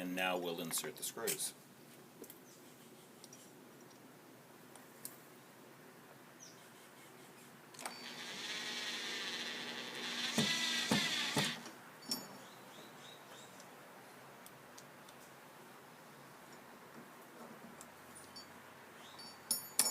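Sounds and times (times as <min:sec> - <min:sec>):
power drill motor whining: 0:07.8 - 0:11.7
sharp knocks: 0:10.2 - 0:11.6.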